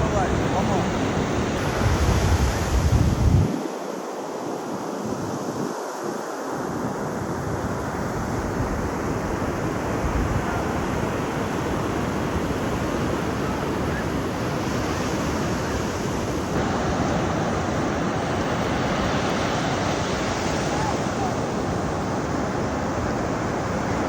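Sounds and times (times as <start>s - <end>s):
ocean surf rushing: 0.0s - 24.0s
wind rumbling on microphone: 0.0s - 24.0s.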